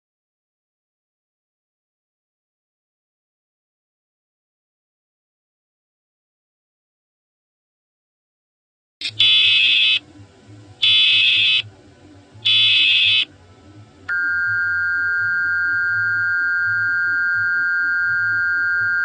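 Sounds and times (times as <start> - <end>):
buzzy data bursts: 9.0 - 10.0, 10.8 - 11.6, 12.4 - 13.3
two-tone attention signal: 12.5 - 13.3, 14.1 - 19.0.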